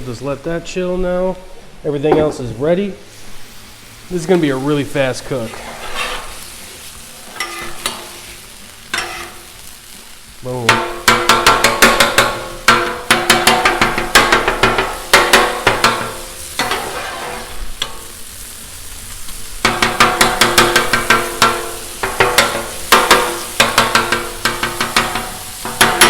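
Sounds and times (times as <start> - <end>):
meat sizzling: 2.7 - 26.0
metal spatulas clattering on griddle: 7.2 - 8.3, 8.9 - 9.5, 10.7 - 18.2, 19.6 - 26.0.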